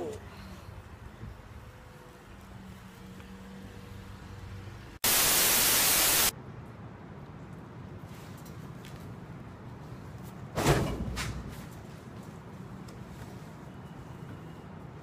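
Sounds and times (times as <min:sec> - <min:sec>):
loud hissing static: 0:05.0 - 0:06.3.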